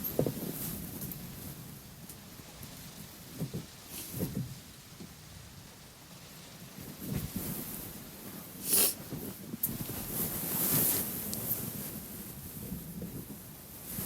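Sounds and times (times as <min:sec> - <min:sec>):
woman blowing her nose: 0:08.6 - 0:09.0.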